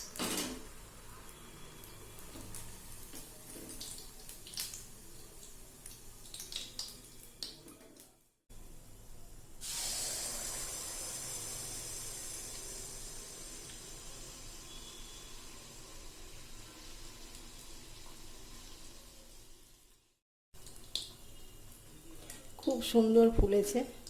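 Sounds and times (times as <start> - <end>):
batter sizzling in hot oil: 9.6 - 23.0.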